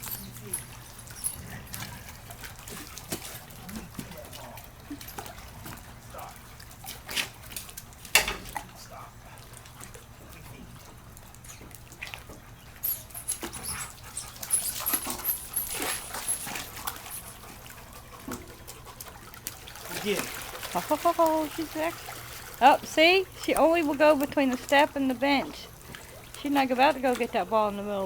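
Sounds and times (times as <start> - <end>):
dog sounds: 0.0 - 7.8, 8.5 - 22.0.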